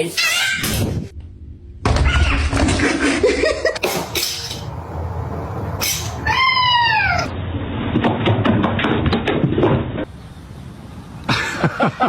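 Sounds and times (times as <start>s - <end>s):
cat meowing: 2.0s - 2.6s, 6.2s - 7.3s
steady background noise: 3.2s - 12.0s.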